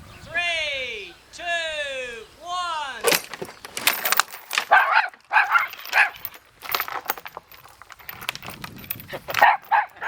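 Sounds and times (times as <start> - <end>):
dog barking: 4.7 - 6.2, 9.4 - 10.0.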